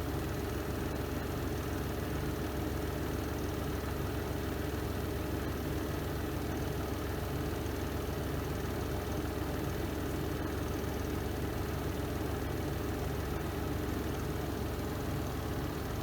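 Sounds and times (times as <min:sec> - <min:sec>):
washing machine motor hum: 0:14.3 - 0:16.0.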